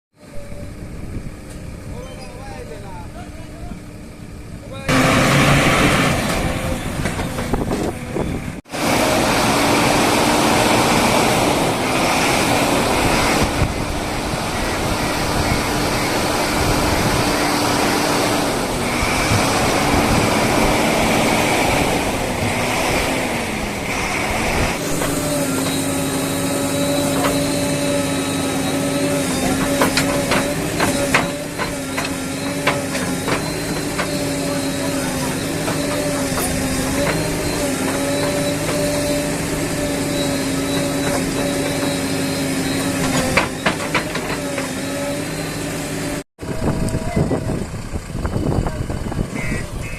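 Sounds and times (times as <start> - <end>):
diesel engine of backhoe loader: 0.1 - 49.9
knocks and clatter: 5.8 - 8.1, 29.3 - 34.3, 42.7 - 44.9.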